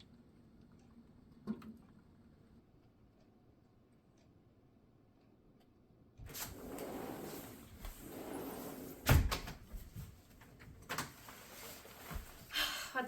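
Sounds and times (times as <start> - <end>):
rustling and handling noise: 9.7 - 12.6.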